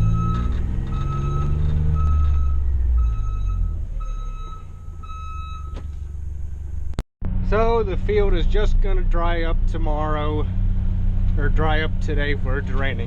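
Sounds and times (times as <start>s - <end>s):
backup alarm beeping: 0.0s - 5.9s
vehicle engine running: 0.0s - 13.0s.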